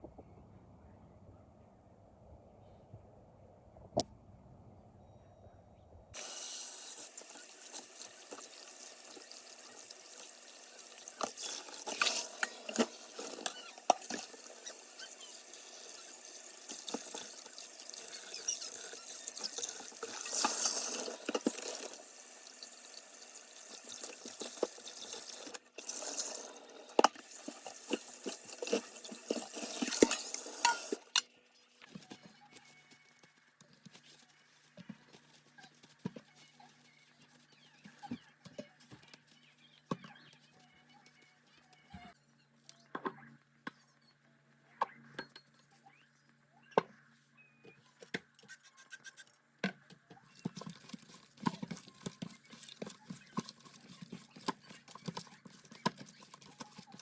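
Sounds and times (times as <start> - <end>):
faint low hum: 0.0 - 6.2
kitchen tap running into sink: 6.2 - 31.1.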